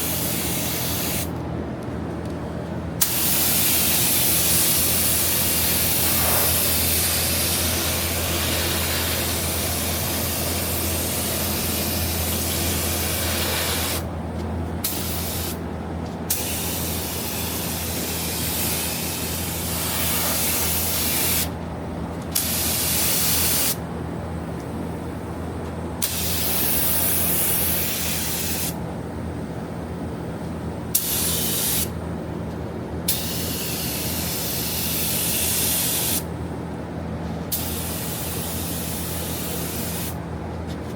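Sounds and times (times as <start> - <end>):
air gun hissing: 0.0 - 1.3, 3.0 - 14.1, 14.8 - 15.6, 16.3 - 21.5, 22.4 - 23.8, 26.0 - 28.8, 30.9 - 31.9, 33.1 - 36.3, 37.5 - 40.2.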